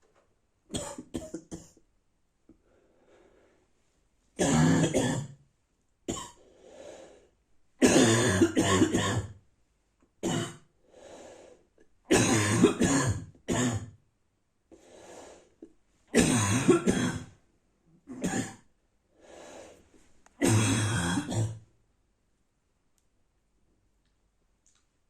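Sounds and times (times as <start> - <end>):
person coughing: 0.7 - 1.8, 4.4 - 5.4, 6.1 - 6.4, 7.8 - 9.4, 10.2 - 10.6, 12.1 - 13.9, 16.2 - 17.4, 18.1 - 18.7, 20.4 - 21.6
breath drawn in: 6.4 - 7.3, 10.9 - 11.7, 14.8 - 15.6, 19.2 - 20.1.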